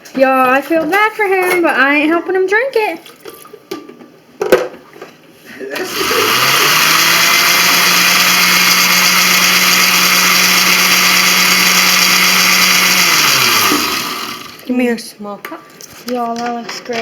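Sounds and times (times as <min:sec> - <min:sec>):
electric blender running: 0:05.7 - 0:14.7.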